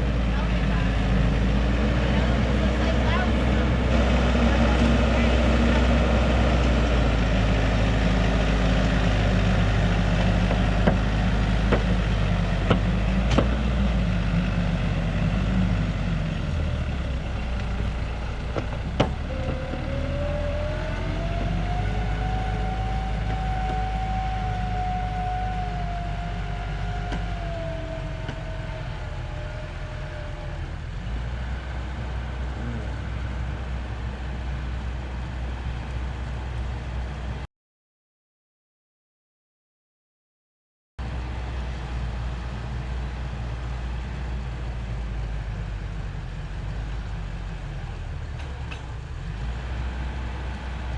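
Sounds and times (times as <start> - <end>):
tractor diesel engine running: 0.0 - 37.4, 41.0 - 50.9
rising whine: 1.4 - 31.1.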